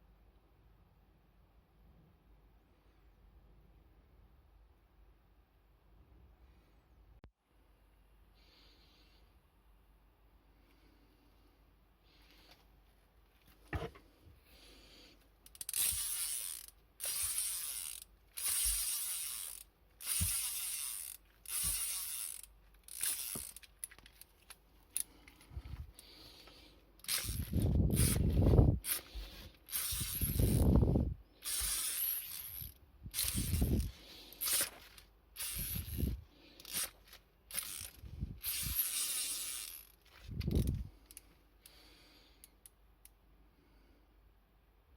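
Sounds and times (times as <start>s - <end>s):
ratchet clicking: 15.4s - 24.3s, 27.0s - 29.1s, 29.7s - 41.2s.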